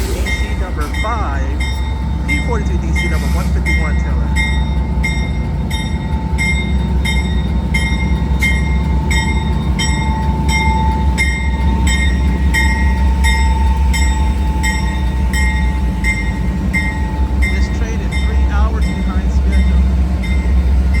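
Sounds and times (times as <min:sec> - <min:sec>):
train rumbling: 0:00.0 - 0:21.0.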